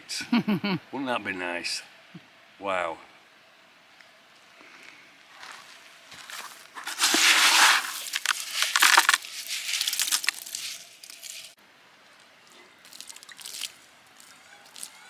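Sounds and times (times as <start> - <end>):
gravel scooped into a metal pan: 5.5 - 11.6.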